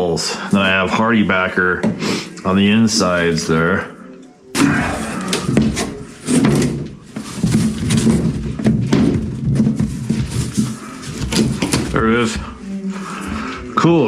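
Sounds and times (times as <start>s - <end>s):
scraping: 4.6s - 13.9s
knocking and banging: 4.7s - 12.4s.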